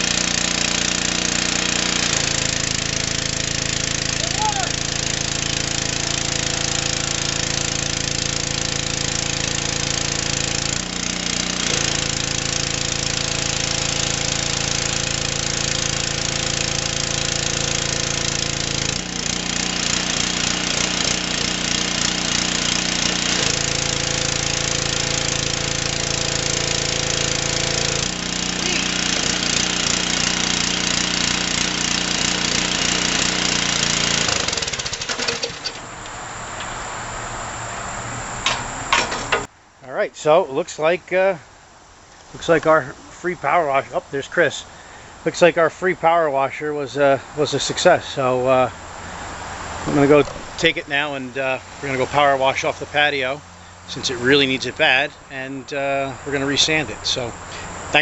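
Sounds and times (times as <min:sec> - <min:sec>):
pressure washer engine running: 0:00.0 - 0:39.5, 0:43.4 - 0:58.0
water spray hiss: 0:00.0 - 0:39.5, 0:55.8 - 0:58.0.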